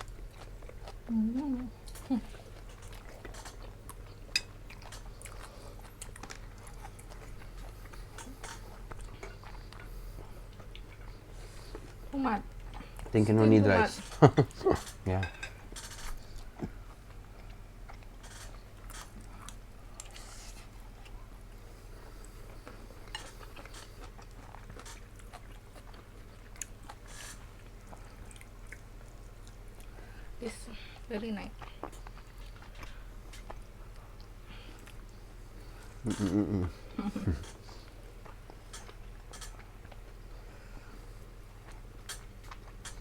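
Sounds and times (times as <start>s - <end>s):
biting and chewing food: 0.0s - 30.0s, 31.0s - 43.0s
steady low hum: 0.0s - 43.0s
small clicks and crunches: 38.7s - 40.0s.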